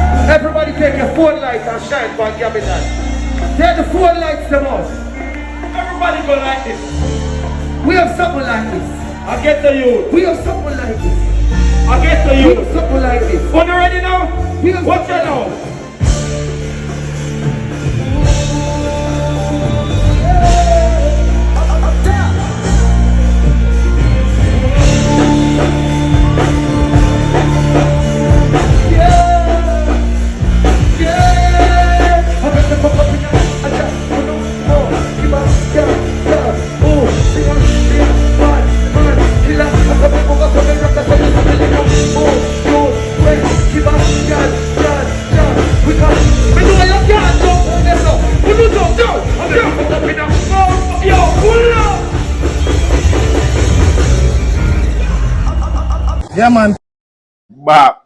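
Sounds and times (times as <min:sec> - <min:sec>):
loud live music: 0:00.0 - 0:56.7
heavy bass line: 0:00.0 - 0:56.8
person singing: 0:17.6 - 0:52.4.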